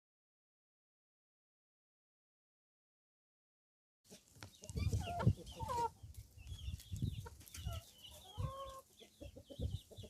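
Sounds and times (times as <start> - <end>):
chickens clucking: 4.1 - 10.0.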